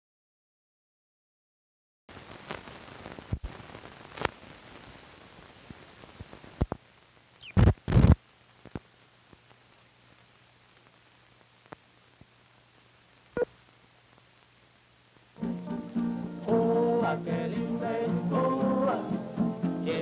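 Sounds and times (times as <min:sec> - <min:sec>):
crackles and pops: 0:02.1 - 0:15.4
film soundtrack hiss: 0:02.1 - 0:20.0.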